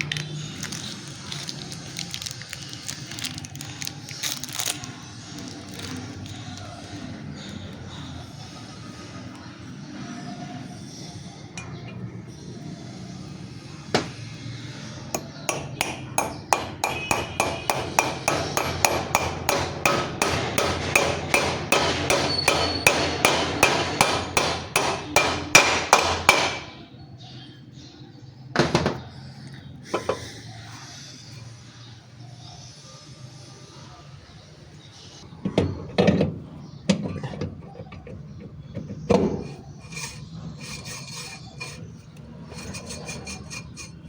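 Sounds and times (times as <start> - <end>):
hammer striking metal: 15.2 - 26.8.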